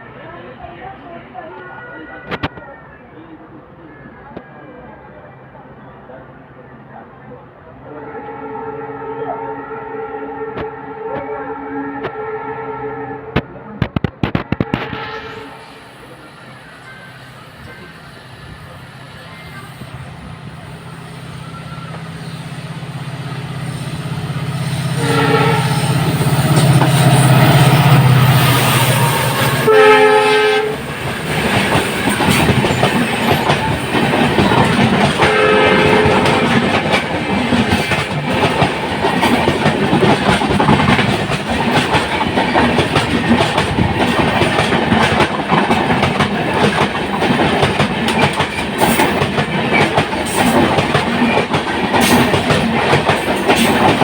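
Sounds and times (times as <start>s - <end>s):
train locomotive drone: 0.0s - 54.0s
train horn: 7.8s - 13.6s, 14.3s - 38.0s.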